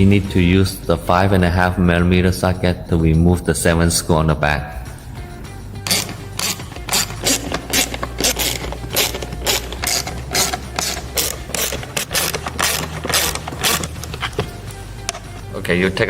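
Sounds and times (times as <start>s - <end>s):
socket ratchet clicking: 5.8s - 15.4s.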